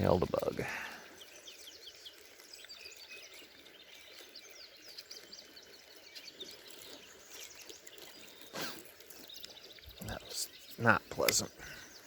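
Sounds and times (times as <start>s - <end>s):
wild birds chirping: 0.0s - 12.0s.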